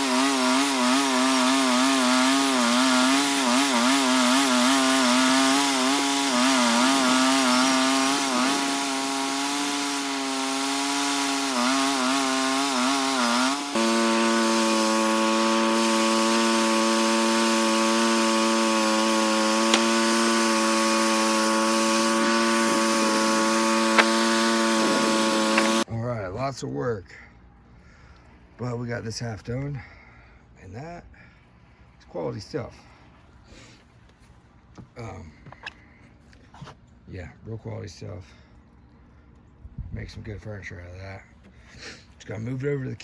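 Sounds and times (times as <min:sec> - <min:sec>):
sawmill engine sawing log: 0:00.0 - 0:25.9.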